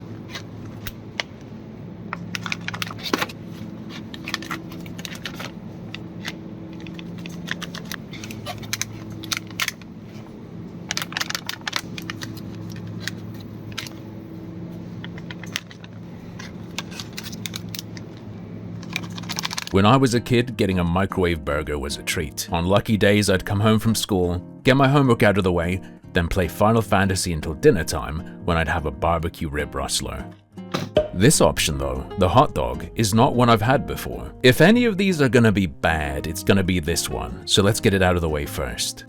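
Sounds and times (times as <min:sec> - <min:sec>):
steady low hum: 0:00.0 - 0:39.0
food packaging crinkling: 0:02.2 - 0:14.0, 0:15.1 - 0:19.8.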